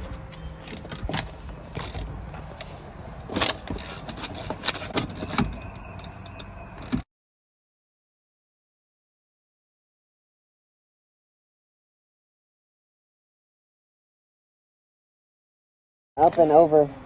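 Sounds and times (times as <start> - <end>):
car trim pieces knocking and rattling: 3.2 - 7.0.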